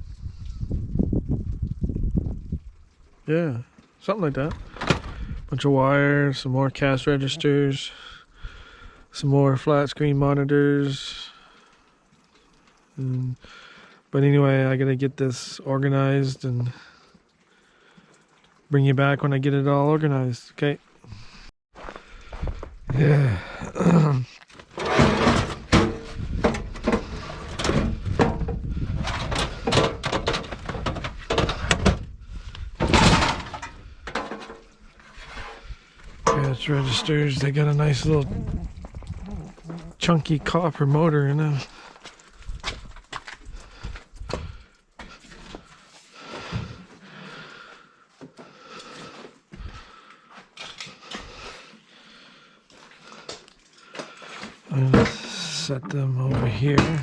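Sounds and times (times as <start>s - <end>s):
hard plastic and metal items clattering: 4.5s - 5.3s, 24.5s - 32.1s, 32.7s - 37.6s
items dragged: 24.5s - 32.0s, 32.6s - 38.7s, 54.2s - 57.0s.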